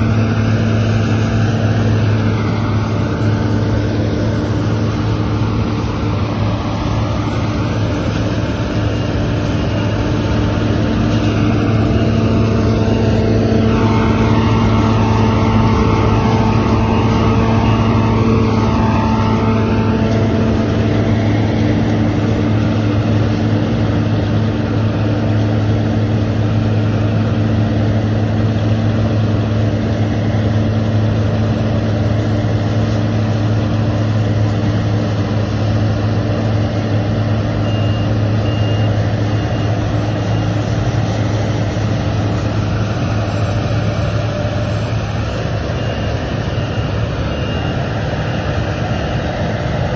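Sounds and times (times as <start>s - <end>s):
combine harvester engine drone: 0.0s - 49.9s
high-pitched whine: 0.0s - 49.9s.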